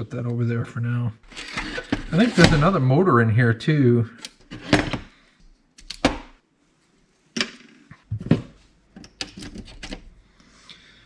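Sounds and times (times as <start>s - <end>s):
plastic and metal parts clicking: 9.0s - 10.1s.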